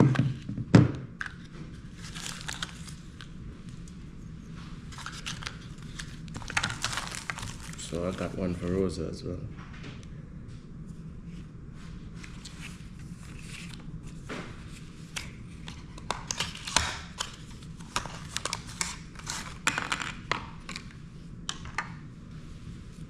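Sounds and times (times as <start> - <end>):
packaging crinkling rustles: 1.3 - 4.0, 4.8 - 8.6.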